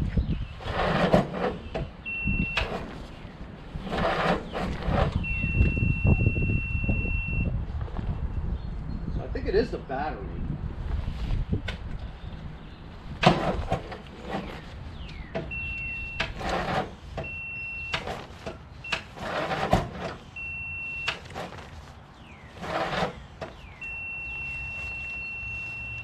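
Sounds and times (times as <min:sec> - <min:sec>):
clattering handling noise: 0:17.9 - 0:20.3, 0:21.0 - 0:23.7.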